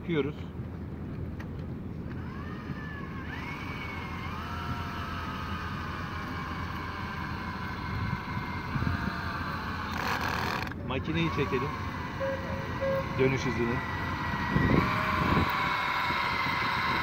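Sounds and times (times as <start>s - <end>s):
cordless drill motor whining: 2.1s - 17.0s
steady low rumble: 11.9s - 15.2s.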